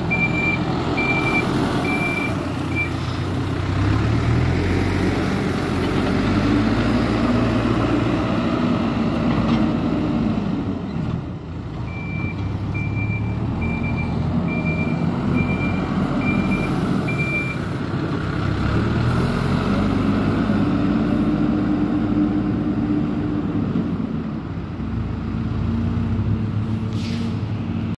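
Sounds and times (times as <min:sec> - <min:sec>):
backup alarm beeping: 0:00.1 - 0:02.9, 0:11.9 - 0:17.6.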